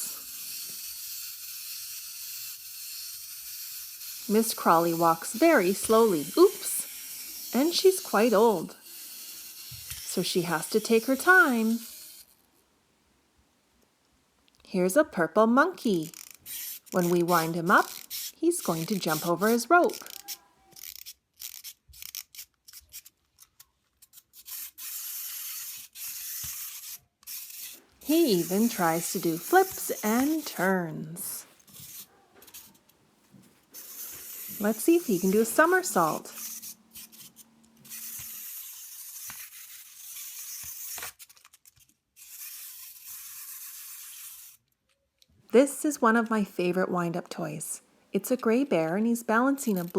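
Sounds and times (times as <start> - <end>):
wind-up toy motor whirring: 0.0 - 12.5, 15.8 - 32.8, 33.7 - 45.3, 49.6 - 49.9
toy knocking as it flips: 16.0 - 18.2, 24.4 - 27.7, 36.4 - 42.5
scratchy clicks and scrapes: 16.0 - 30.8, 31.6 - 45.3.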